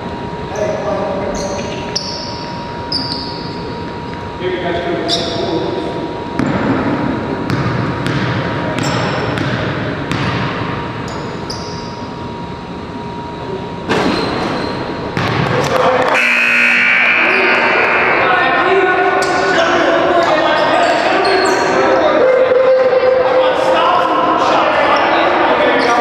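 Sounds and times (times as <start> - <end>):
ball bouncing on court: 6.4 - 11.2, 13.9 - 16.0.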